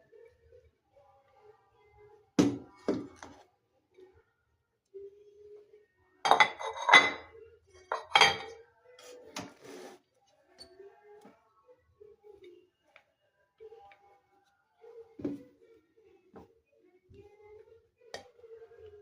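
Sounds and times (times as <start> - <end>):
kitchenware clinking and clattering: 2.4 - 3.4, 6.2 - 8.6.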